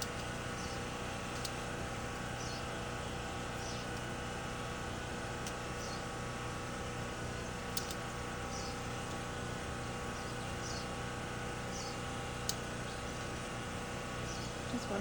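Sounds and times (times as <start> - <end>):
steady low hum: 0.0 - 15.0
wire stripper clicks: 1.3 - 1.6, 7.7 - 8.0.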